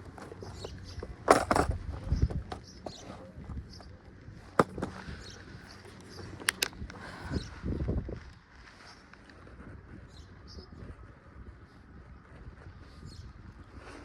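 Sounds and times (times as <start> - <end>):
low rumbling handling noise: 0.0 - 11.1.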